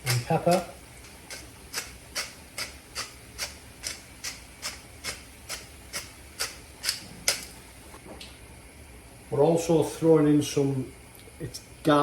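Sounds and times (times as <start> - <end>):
seasoning grinder rasping crunches: 0.0 - 7.5.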